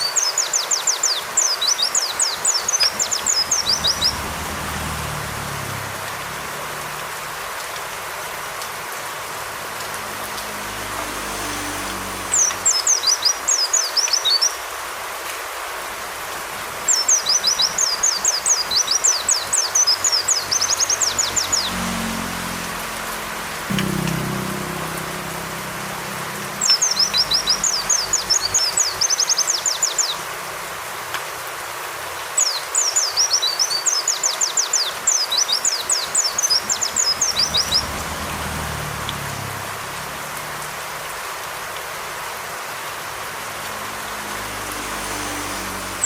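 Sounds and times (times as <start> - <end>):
bird chirping song: 0.0 - 4.4, 12.4 - 14.6, 16.9 - 21.9, 26.5 - 30.2, 32.4 - 38.0
falling rain: 0.0 - 46.0.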